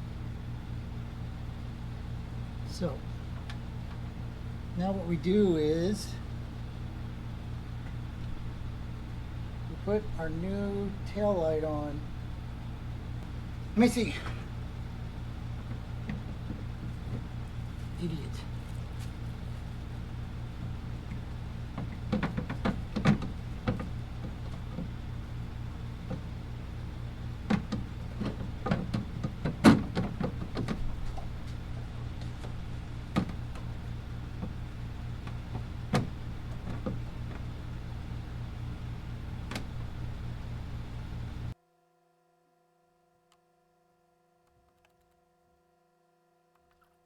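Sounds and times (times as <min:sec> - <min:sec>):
low hum: 0:00.0 - 0:41.6
light clicks and knocks: 0:15.6 - 0:19.4, 0:20.6 - 0:25.2, 0:26.0 - 0:26.4, 0:27.4 - 0:38.0, 0:39.3 - 0:40.5.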